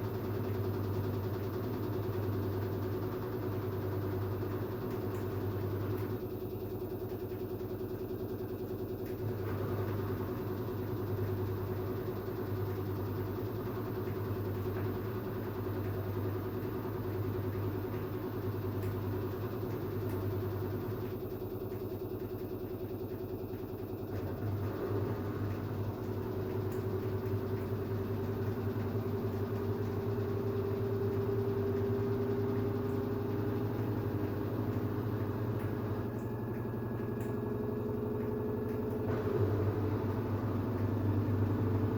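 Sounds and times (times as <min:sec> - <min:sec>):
washing machine spinning: 0:00.0 - 0:41.9.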